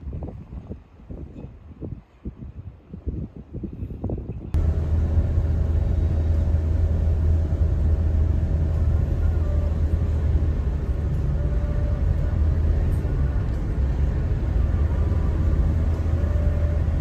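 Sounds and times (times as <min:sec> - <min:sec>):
car rumbling while moving: 0:04.5 - 0:17.0.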